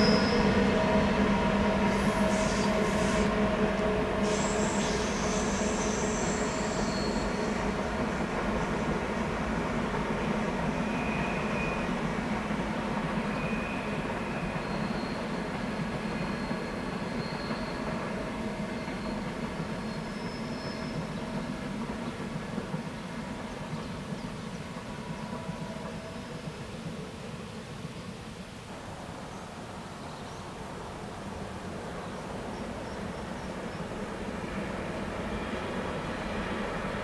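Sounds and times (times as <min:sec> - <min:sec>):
train wheels on rails: 0:00.0 - 0:37.0.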